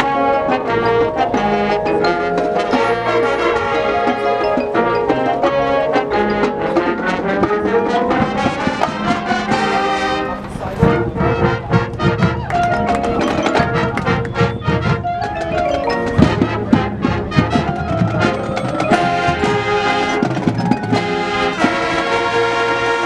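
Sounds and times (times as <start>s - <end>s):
mallet percussion: 0.0s - 9.9s, 10.8s - 22.7s
marching drums: 6.7s - 10.1s, 10.8s - 23.0s.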